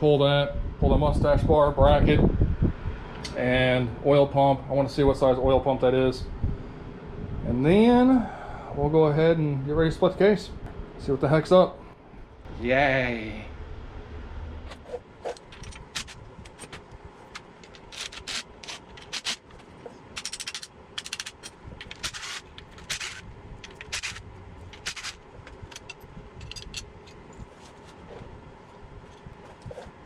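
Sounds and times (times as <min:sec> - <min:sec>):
fan hum: 0:00.0 - 0:30.0
metal parts clinking and rattling: 0:15.2 - 0:28.0.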